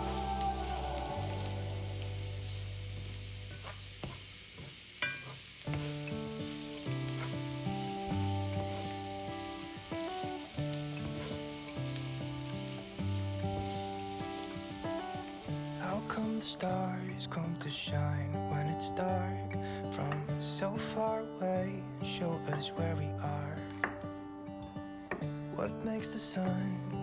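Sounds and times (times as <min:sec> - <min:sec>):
instrumental background music: 0:00.0 - 0:03.7, 0:05.7 - 0:17.0
food sizzling in oil: 0:00.0 - 0:17.2.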